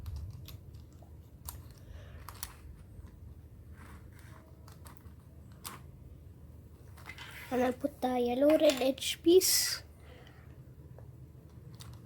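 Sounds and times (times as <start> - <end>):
puzzle cube plastic clicks: 11.4 - 12.0.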